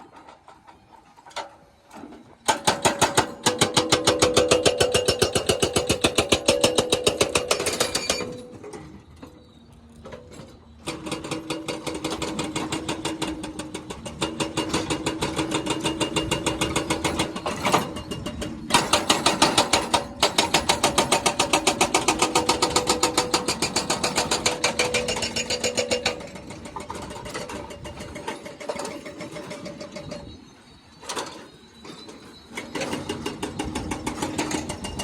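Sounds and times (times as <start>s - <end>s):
jackhammer pounding: 10.8s - 29.8s.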